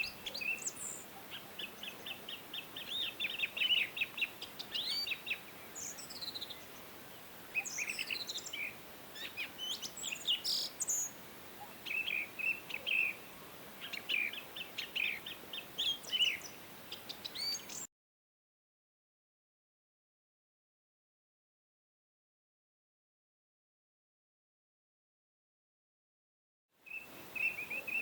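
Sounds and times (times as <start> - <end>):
faint steady hiss: 0.0 - 17.9, 26.8 - 28.0
songbirds chirping and trilling: 0.0 - 17.9, 26.8 - 28.0.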